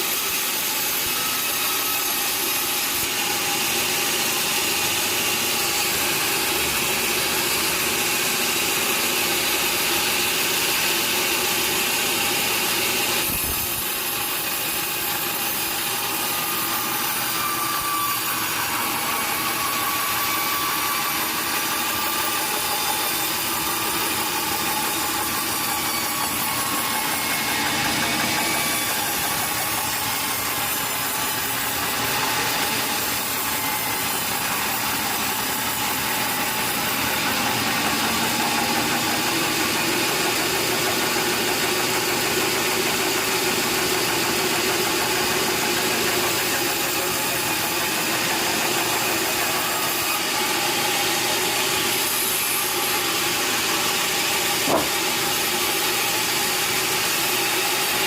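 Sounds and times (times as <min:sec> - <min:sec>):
sawmill machinery running: 0:00.0 - 0:58.0
sharp knock: 0:54.6 - 0:55.0.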